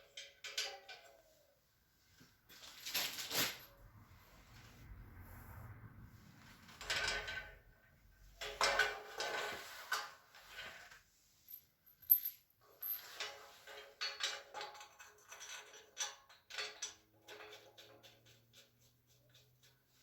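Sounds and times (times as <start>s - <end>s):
metal parts clinking and scraping: 0.0s - 1.4s, 2.5s - 3.8s, 8.4s - 10.9s, 11.5s - 18.6s.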